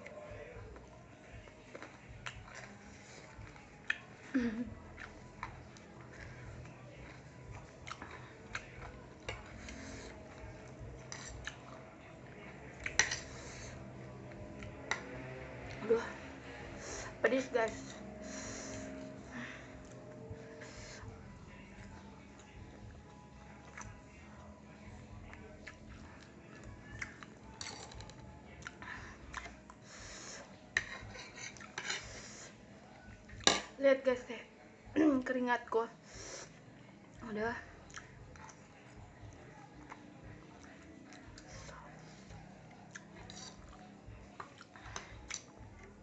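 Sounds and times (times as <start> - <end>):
utensils clicking against a bowl: 27.1 - 28.2.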